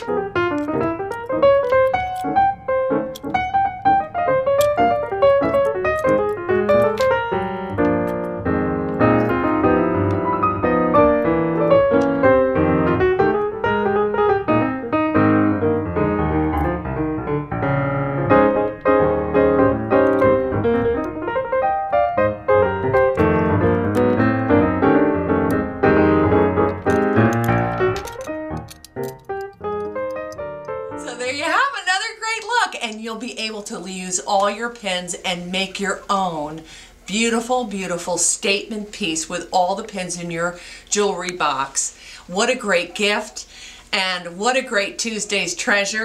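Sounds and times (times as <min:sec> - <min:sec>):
piano music: 0:00.0 - 0:32.4.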